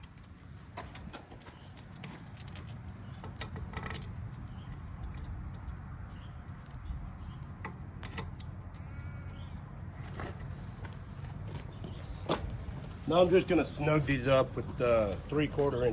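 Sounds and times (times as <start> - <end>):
metal bolts clinking and scraping: 0.0 - 11.3.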